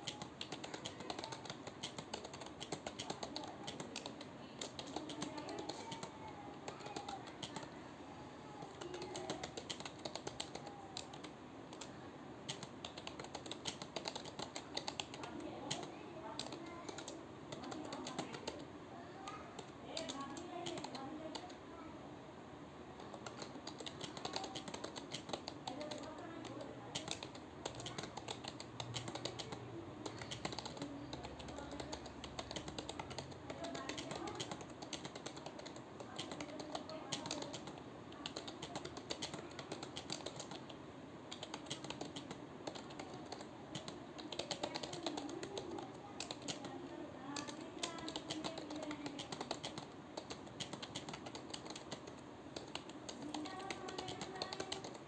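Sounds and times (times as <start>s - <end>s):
fast computer keyboard typing: 0.0s - 7.8s, 8.5s - 18.7s, 19.3s - 21.6s, 23.0s - 55.0s.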